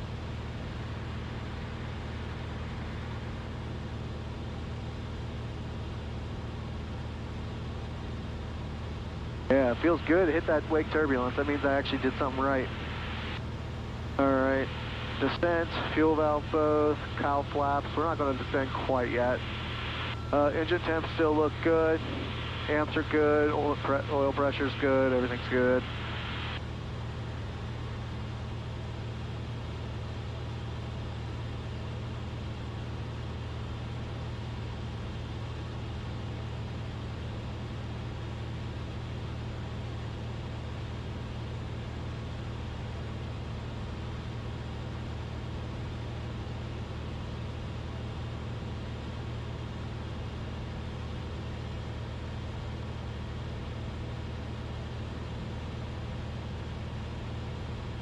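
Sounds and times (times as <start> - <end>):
aircraft engine and propeller drone: 0.0 - 58.0.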